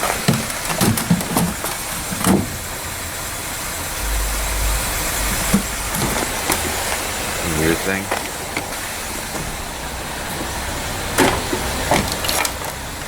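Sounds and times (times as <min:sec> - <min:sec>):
outdoor background noise: 0:00.0 - 0:13.0
low rumble: 0:03.9 - 0:08.3.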